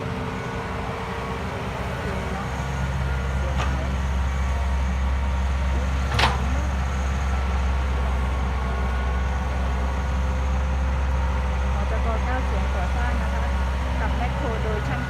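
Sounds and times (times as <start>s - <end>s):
excavator diesel engine running: 0.0s - 15.0s.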